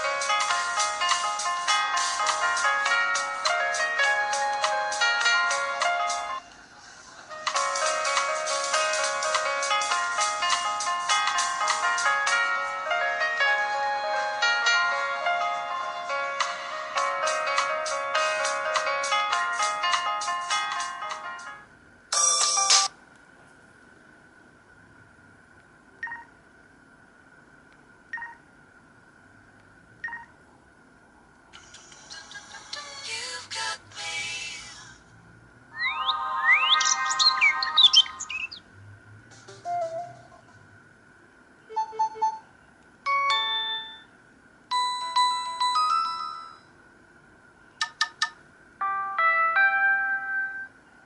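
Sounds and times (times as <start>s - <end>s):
faint high hum: 0.0s - 51.0s
mobile phone beeps: 35.8s - 38.6s.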